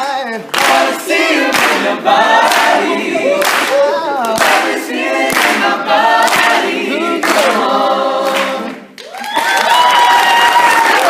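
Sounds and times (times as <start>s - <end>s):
sharp percussive beats: 0.0s - 7.9s
male group singing in harmony: 0.6s - 8.8s.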